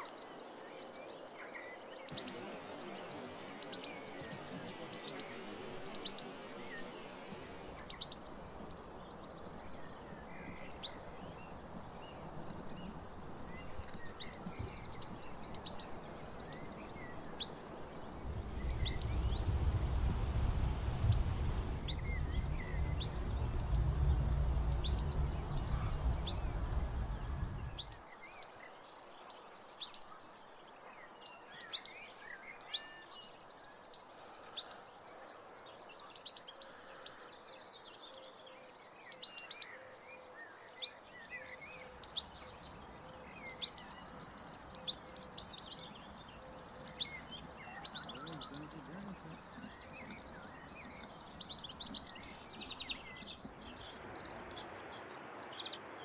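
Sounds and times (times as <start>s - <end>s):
birds chirping: 0.0s - 56.0s
outdoor background noise: 0.0s - 56.0s
low rumble: 17.9s - 28.0s.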